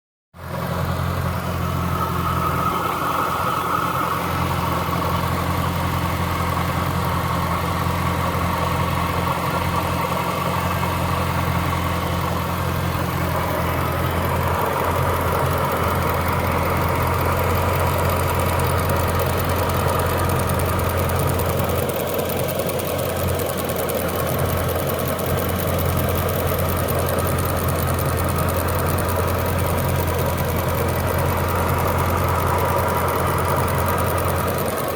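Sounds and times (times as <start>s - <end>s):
car engine idling: 0.4s - 34.9s
engine tapping noise: 0.4s - 34.9s.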